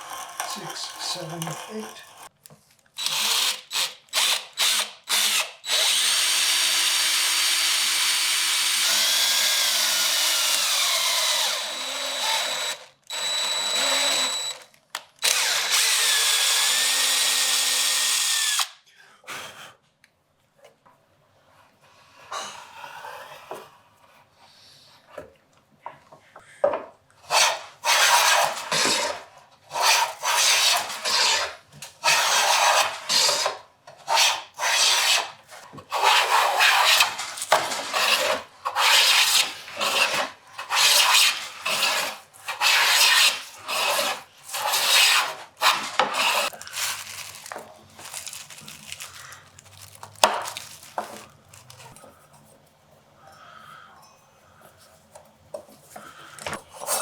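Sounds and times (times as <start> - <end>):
hand tool rasping wood: 0.0 - 2.3, 35.9 - 46.5.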